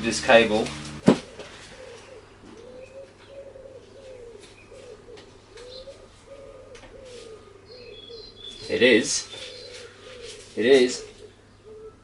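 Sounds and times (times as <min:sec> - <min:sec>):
pigeon cooing: 0:01.1 - 0:12.0.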